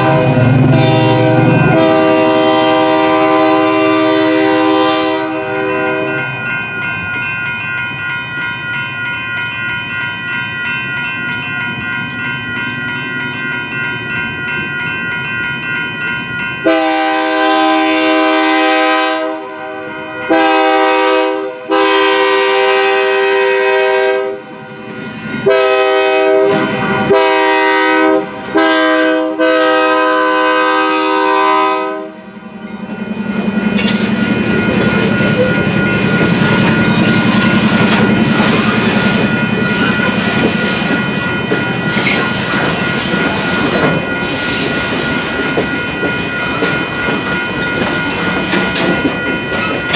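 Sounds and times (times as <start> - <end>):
locomotive air horn blasts: 0.0 - 6.3, 16.6 - 24.5, 25.4 - 32.3
crossing warning bell ringing: 0.0 - 49.9
train wheels clattering on rails: 32.4 - 49.9.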